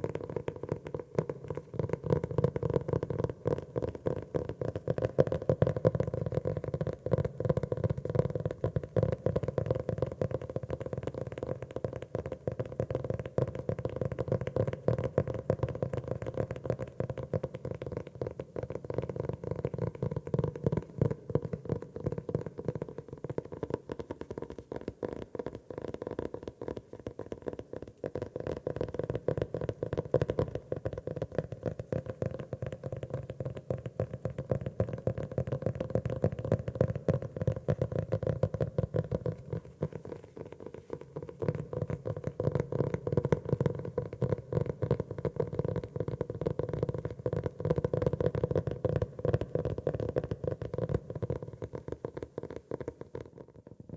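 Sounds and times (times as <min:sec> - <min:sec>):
fingers tapping on notebook: 0:18.9 - 0:53.6.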